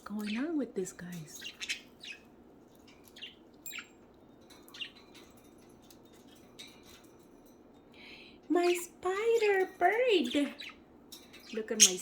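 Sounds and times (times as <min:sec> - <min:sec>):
budgerigars chirping faintly: 0:00.0 - 0:08.7, 0:09.3 - 0:12.0.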